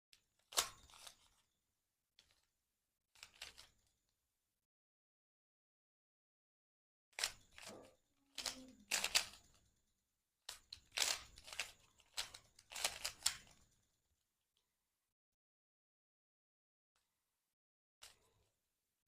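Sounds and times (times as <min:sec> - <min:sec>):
puzzle cube clicking and rattling: 0:00.4 - 0:01.4, 0:03.2 - 0:03.7, 0:07.2 - 0:09.6, 0:10.5 - 0:13.6.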